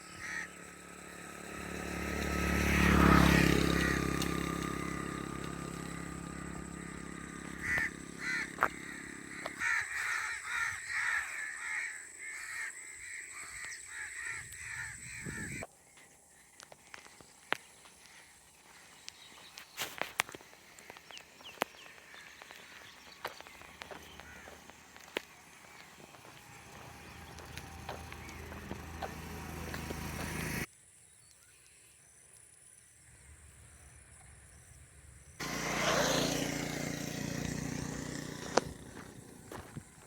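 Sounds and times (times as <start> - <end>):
crow cawing: 0.0 - 0.7, 3.2 - 5.1, 7.0 - 15.6, 21.8 - 26.2
passing vehicle engine hum: 0.0 - 10.6, 18.4 - 30.7, 33.2 - 40.0.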